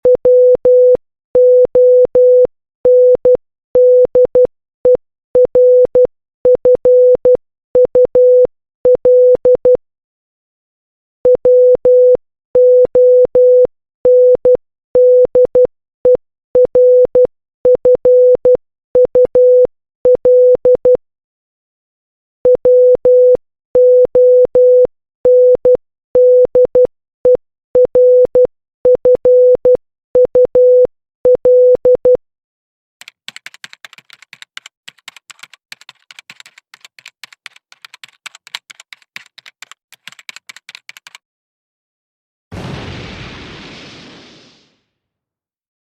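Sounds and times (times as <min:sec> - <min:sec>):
morse code beeps: 0:00.0 - 0:09.8.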